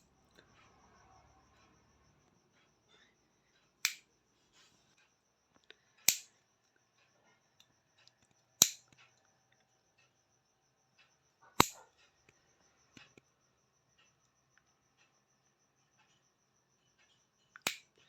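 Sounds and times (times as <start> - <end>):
nail clipper snapping shut: 3.8 - 4.0, 6.1 - 6.3, 8.6 - 8.9, 11.6 - 11.8, 17.7 - 17.9.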